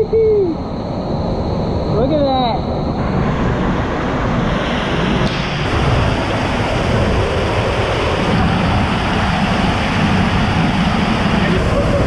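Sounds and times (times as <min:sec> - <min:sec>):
waterfall rushing: 0:03.0 - 0:12.0.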